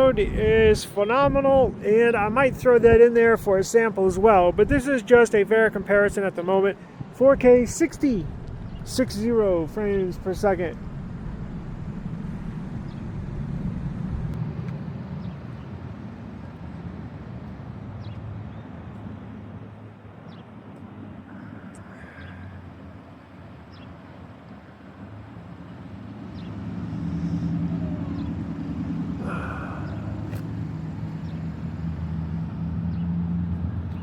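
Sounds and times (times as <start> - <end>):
cars passing: 1.8 - 34.0
approaching vehicle engine hum: 8.1 - 34.0.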